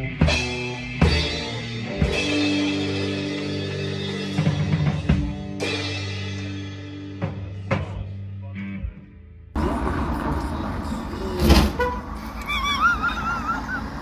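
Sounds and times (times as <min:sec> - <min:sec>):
drum and cymbal hits: 0:00.0 - 0:08.1
music with held notes: 0:00.0 - 0:09.0.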